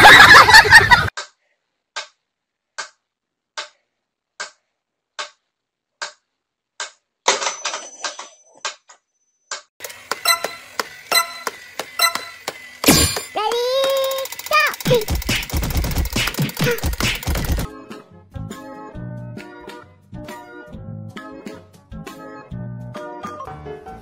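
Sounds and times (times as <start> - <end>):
sharp ticks: 13.4 - 17.7.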